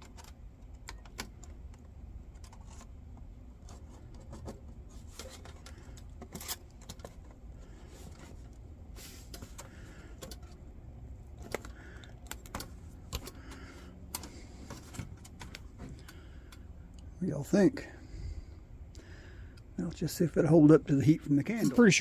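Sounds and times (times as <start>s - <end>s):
small parts clicking and tapping: 0.0s - 7.4s, 9.3s - 10.6s, 11.2s - 17.0s
faint low hum: 0.0s - 22.0s.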